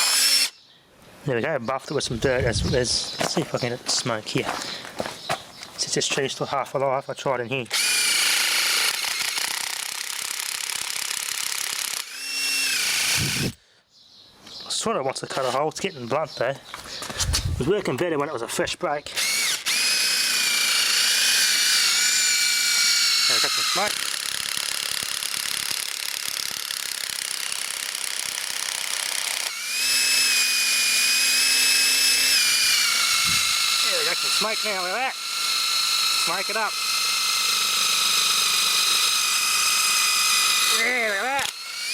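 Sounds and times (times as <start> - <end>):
cordless drill grinding into wood: 0.0 - 0.6, 7.7 - 13.6, 19.1 - 41.9.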